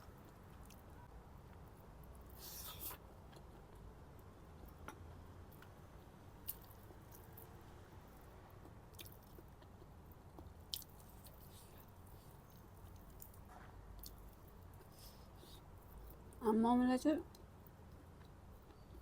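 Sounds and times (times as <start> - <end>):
person chewing food: 4.6 - 5.8, 8.2 - 16.2.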